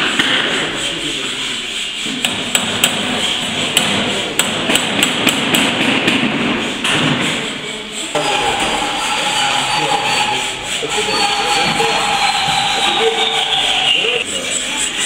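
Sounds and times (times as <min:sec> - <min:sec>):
hammers striking metal: 0:02.1 - 0:13.9.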